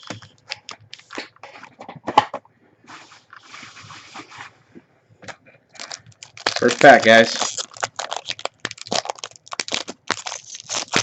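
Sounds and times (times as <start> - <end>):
foil card pack rustling: 5.8 - 11.0.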